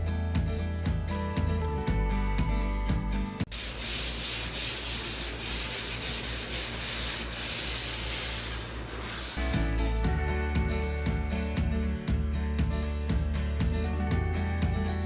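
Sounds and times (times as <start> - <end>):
sanding drywall: 3.5 - 9.5
background music: 9.4 - 15.0.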